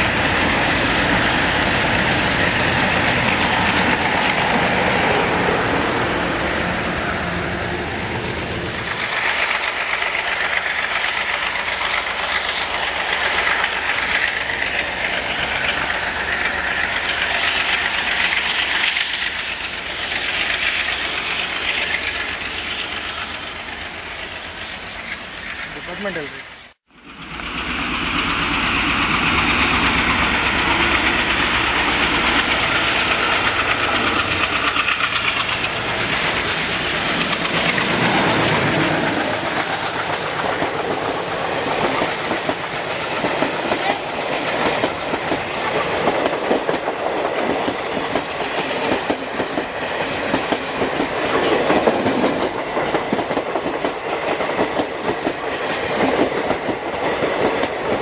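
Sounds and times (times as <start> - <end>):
locomotive passing: 0.0 - 58.0
train wheels clattering over rail joints: 27.4 - 58.0.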